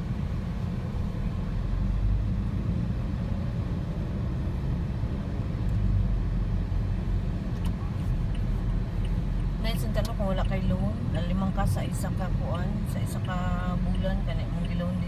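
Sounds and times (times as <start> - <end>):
vehicle rumble in motion: 0.0 - 15.0.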